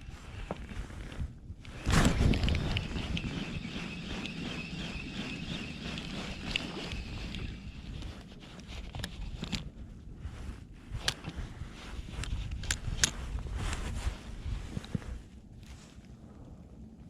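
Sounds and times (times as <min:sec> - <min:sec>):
fishing reel whining and ticking: 0:01.7 - 0:07.9.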